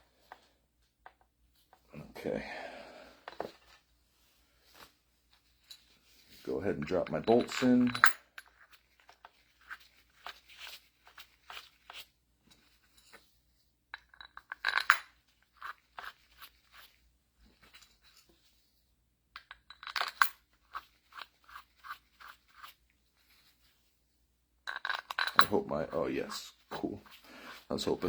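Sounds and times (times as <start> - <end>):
metal bolts clicking and clinking: 6.9 - 8.5, 24.7 - 26.8.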